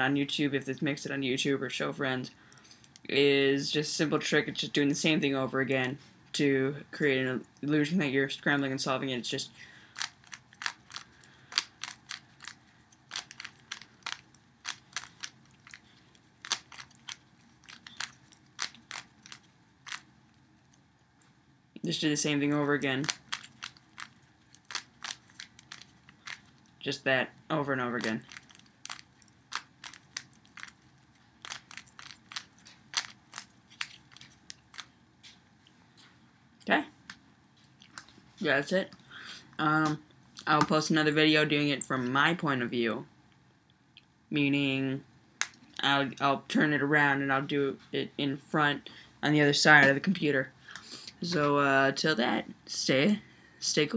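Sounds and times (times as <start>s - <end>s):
rubik's cube clicking: 10.0s - 20.1s, 22.9s - 26.5s, 28.0s - 30.8s, 31.4s - 34.9s.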